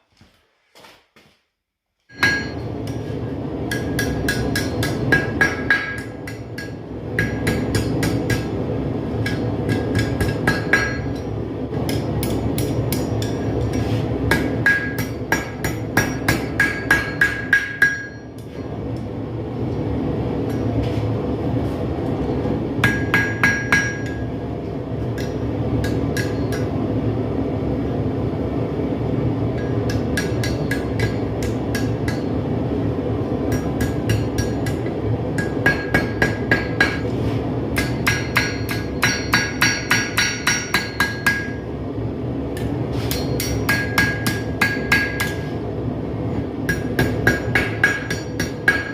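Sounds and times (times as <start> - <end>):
hammer striking steel on anvil: 2.1 - 8.6, 9.2 - 18.6, 22.8 - 24.3, 25.1 - 26.8, 29.5 - 32.4, 33.4 - 41.7, 42.6 - 45.5, 46.7 - 48.9.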